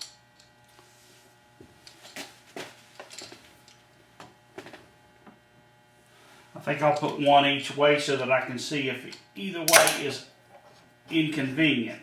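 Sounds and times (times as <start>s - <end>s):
metal clamps clicking and knocking: 9.7s - 10.1s.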